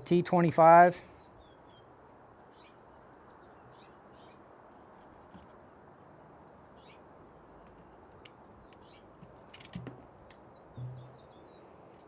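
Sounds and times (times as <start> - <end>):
low thud: 10.8 - 11.2.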